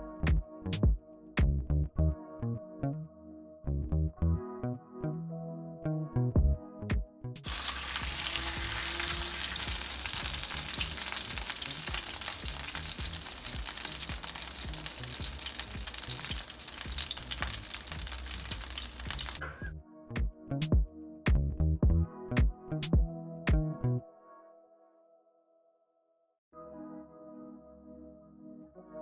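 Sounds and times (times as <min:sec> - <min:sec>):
music with a beat: 0:00.0 - 0:01.9, 0:06.4 - 0:07.5, 0:09.7 - 0:24.0
fish frying in hot oil: 0:07.5 - 0:19.4.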